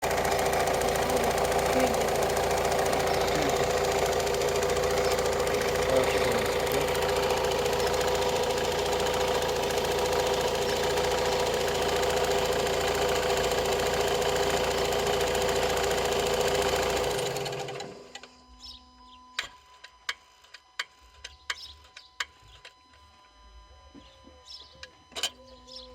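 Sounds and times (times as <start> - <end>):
engine clicking noise: 0.0 - 18.4
diesel engine running: 0.0 - 18.8.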